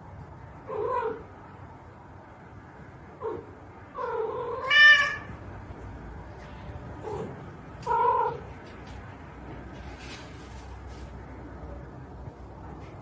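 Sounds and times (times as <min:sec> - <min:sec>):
cat meowing: 0:04.0 - 0:05.4.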